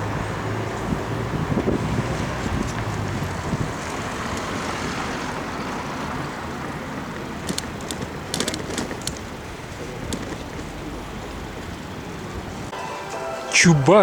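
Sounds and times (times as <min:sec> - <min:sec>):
car road and engine noise: 0:00.0 - 0:13.0
sharp clicks: 0:07.4 - 0:09.3.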